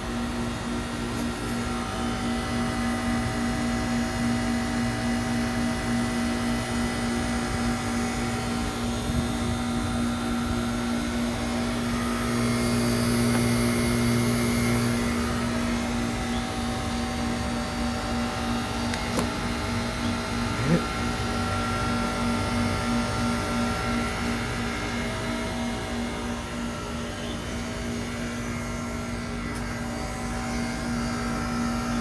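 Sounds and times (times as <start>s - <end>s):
electrical hum: 0.0s - 32.0s.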